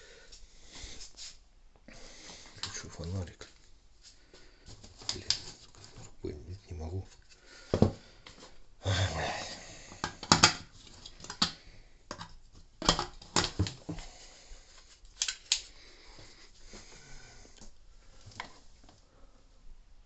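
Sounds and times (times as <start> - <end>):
small objects clicking and knocking: 10.0 - 14.0.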